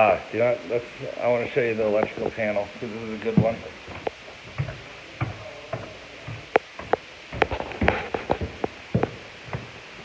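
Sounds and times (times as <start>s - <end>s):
footsteps: 1.2s - 10.0s
light rustling: 1.8s - 9.8s.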